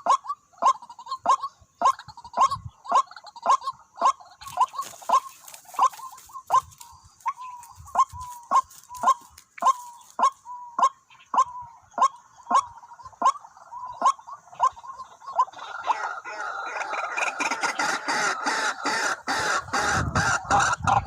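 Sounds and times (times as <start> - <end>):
bird harsh kwak calls: 0.0 - 21.0.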